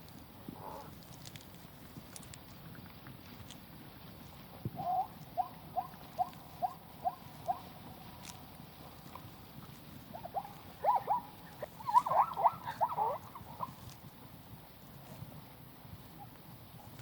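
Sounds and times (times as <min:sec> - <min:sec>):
animal chirping: 0:04.8 - 0:07.7, 0:10.1 - 0:14.0.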